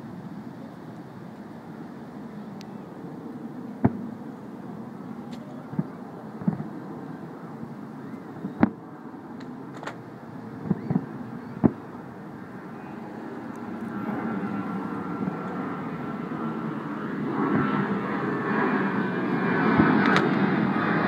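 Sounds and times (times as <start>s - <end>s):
low background noise: 0.0s - 21.0s
distant fireworks booming: 3.7s - 16.9s.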